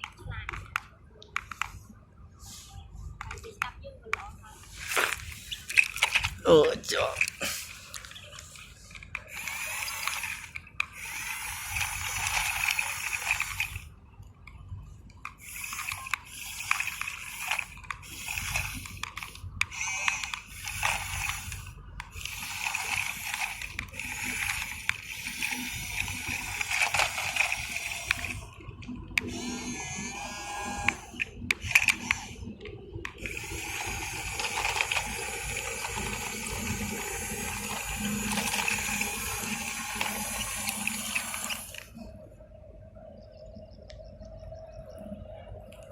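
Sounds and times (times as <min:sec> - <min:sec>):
small electric motor whine: 0:07.0 - 0:13.9, 0:15.3 - 0:42.2.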